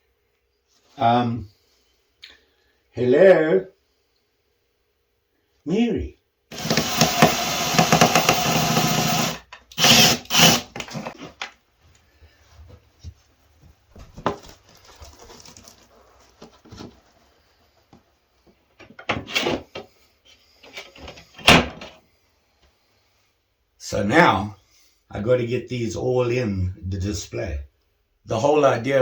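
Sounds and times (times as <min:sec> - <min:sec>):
power drill running: 0:06.5 - 0:11.2.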